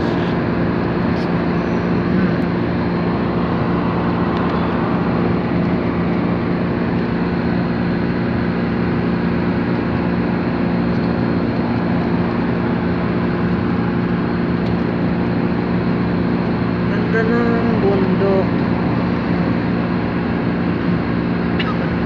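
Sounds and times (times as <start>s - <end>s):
rush of noise: 0.0s - 17.0s
vehicle engine hum: 0.0s - 22.0s.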